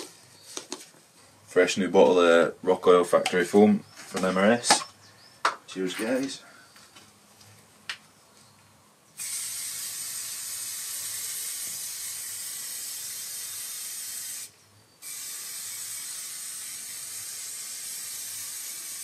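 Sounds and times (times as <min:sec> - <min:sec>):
aerosol can spraying: 0:09.2 - 0:19.0.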